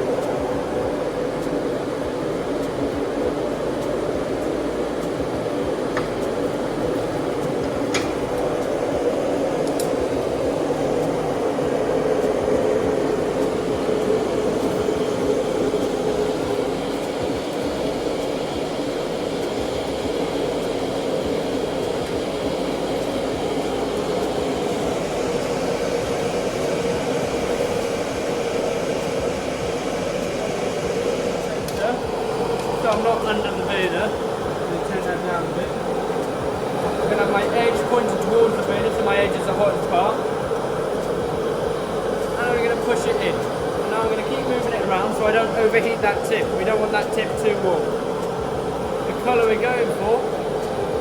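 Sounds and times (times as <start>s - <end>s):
gas forge burner rushing: 0.0s - 51.0s.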